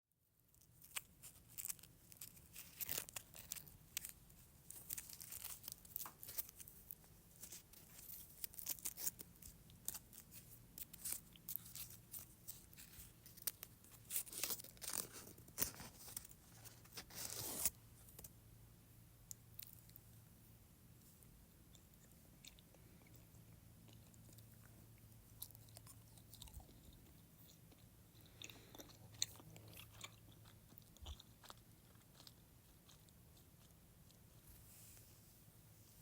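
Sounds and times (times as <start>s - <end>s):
chewing gum clicks and smacks: 21.7s - 34.2s.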